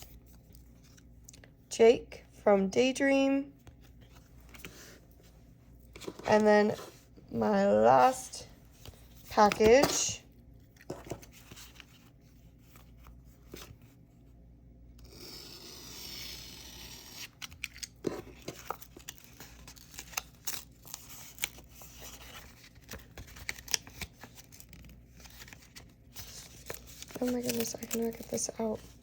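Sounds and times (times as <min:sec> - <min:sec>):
packaging rustling and tearing: 0:17.1 - 0:29.0.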